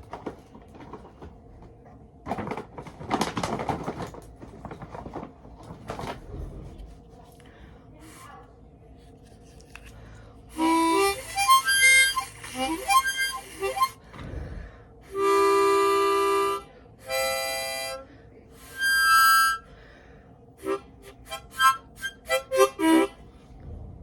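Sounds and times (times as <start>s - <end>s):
harmonica playing: 10.5s - 14.0s, 15.1s - 19.7s, 20.6s - 23.2s.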